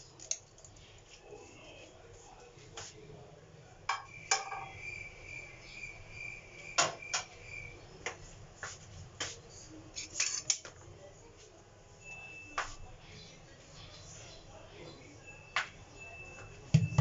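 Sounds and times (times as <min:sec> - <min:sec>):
household items knocking: 0:16.7 - 0:17.0.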